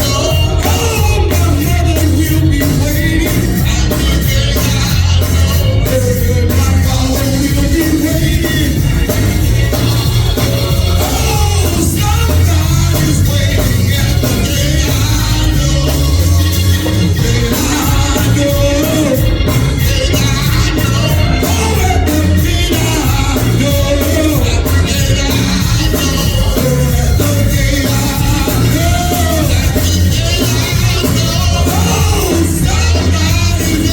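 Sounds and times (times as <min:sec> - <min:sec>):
voices singing: 0:00.0 - 0:33.9
worship band playing: 0:00.0 - 0:33.9.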